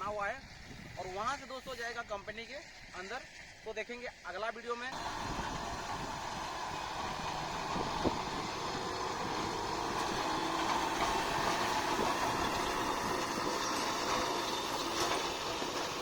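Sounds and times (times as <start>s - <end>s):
hay machinery clattering: 5.0s - 16.0s
tractor engine running: 5.0s - 16.0s.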